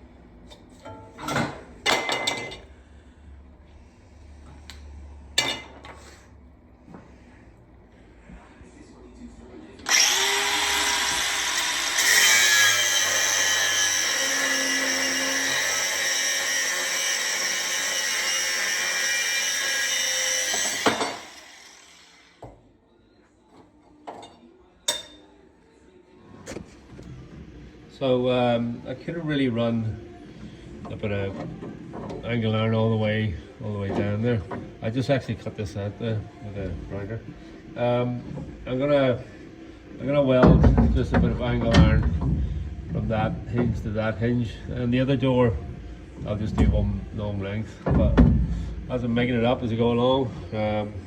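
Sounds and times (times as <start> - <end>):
angle grinder whining: 9.8 - 22.4.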